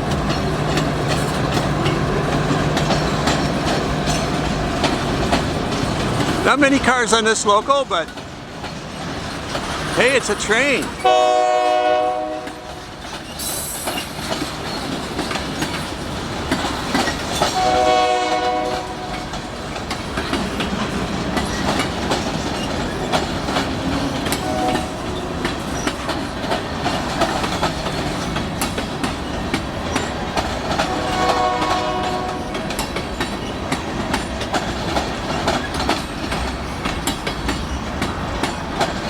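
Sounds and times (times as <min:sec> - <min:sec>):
train wheels clicking over rail joints: 0:00.0 - 0:39.0
locomotive air horn: 0:11.0 - 0:12.8, 0:17.6 - 0:19.3, 0:24.4 - 0:25.1, 0:30.8 - 0:32.6.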